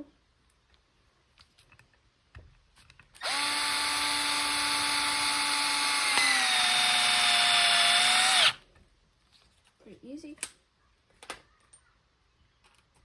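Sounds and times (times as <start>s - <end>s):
screwdriver motor whine: 3.2s - 8.6s.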